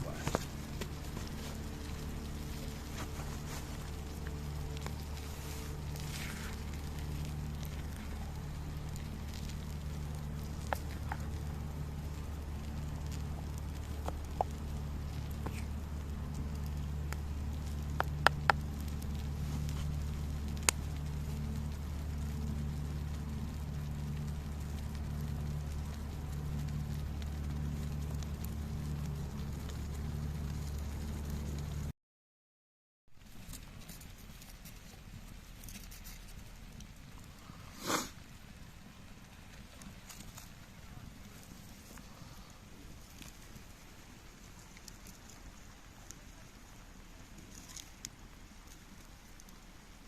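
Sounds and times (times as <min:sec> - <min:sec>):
low hum: 0:00.0 - 0:31.9
wood fire crackling: 0:00.0 - 0:31.9, 0:33.2 - 0:50.0.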